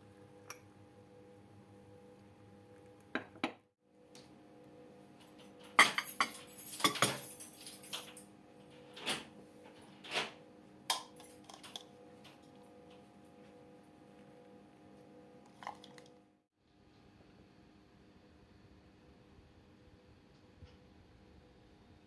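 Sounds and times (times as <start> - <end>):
faint steady hum: 0.0 - 9.8
dishes and cutlery clinking: 5.7 - 7.8.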